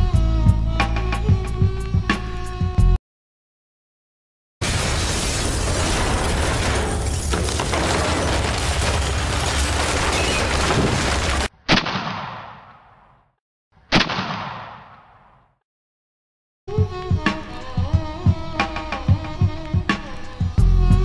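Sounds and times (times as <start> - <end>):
sharp gunshot bangs: 11.7 - 13.1, 13.9 - 15.4.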